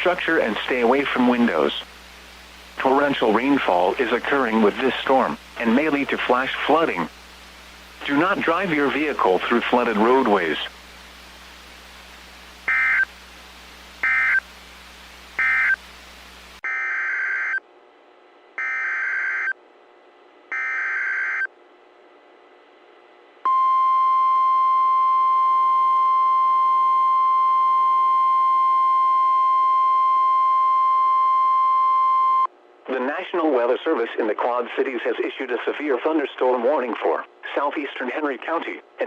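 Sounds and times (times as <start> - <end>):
longer data header bursts: 0.0 - 17.5
screeching data bursts: 12.7 - 13.1, 14.0 - 14.4, 15.4 - 15.8
steady warning alarm tone: 12.7 - 13.1, 14.0 - 14.4, 15.4 - 15.8, 18.6 - 19.5, 20.5 - 21.5.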